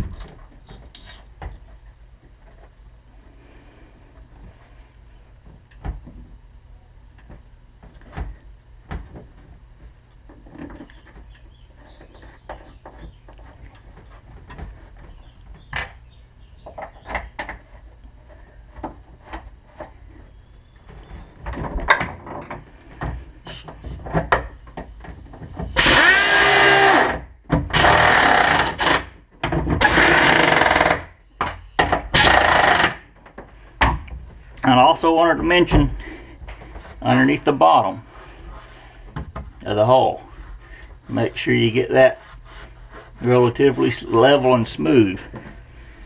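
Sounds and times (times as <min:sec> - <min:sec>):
power drill running: 0:25.8 - 0:29.1, 0:29.8 - 0:31.1, 0:32.1 - 0:33.0.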